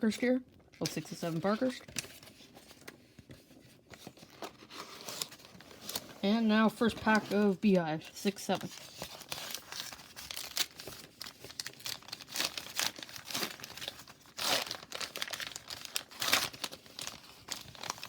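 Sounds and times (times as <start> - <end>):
foil wrapper tearing and crinkling: 8.8 - 18.0.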